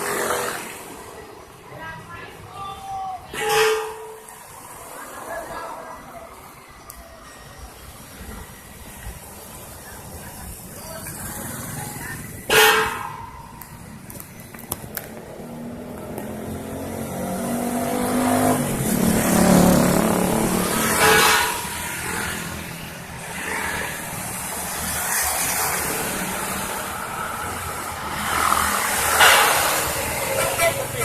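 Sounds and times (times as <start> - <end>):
vehicle accelerating past: 15.3 - 21.0.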